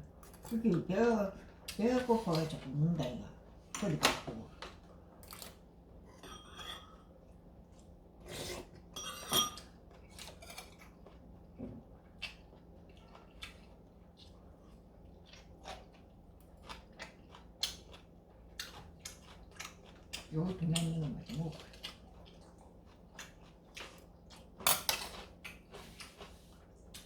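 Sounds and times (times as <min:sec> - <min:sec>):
utensils clinking against bowls: 0:06.2 - 0:07.0, 0:09.0 - 0:09.7
chewing: 0:09.9 - 0:27.0.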